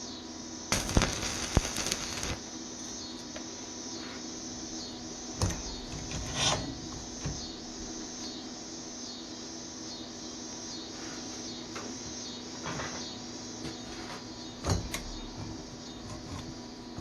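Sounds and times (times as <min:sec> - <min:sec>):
machine hum: 0:00.6 - 0:10.8.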